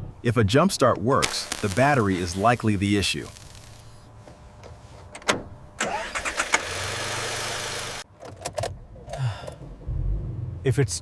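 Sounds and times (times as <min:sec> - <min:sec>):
car engine starting and running: 0:05.3 - 0:10.9.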